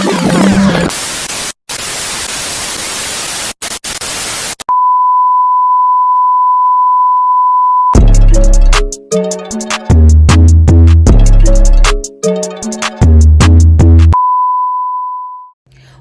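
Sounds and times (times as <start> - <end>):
television static hiss: 0.8 - 4.7.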